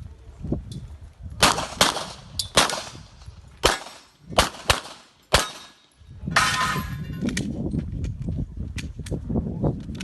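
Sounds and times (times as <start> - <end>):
pistol shots: 1.4 - 3.0, 3.6 - 5.8.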